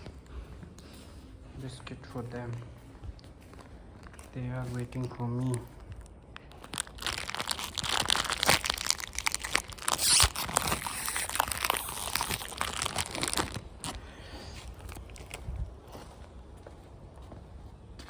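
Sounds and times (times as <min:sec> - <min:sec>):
plastic packet crinkling: 0:04.0 - 0:14.0, 0:14.7 - 0:15.4.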